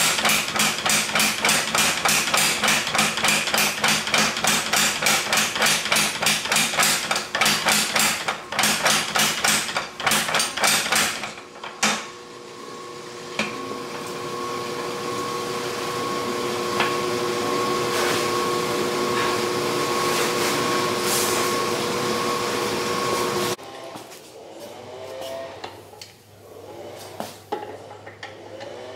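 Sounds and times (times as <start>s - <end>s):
hammer striking steel on anvil: 0.0s - 11.2s.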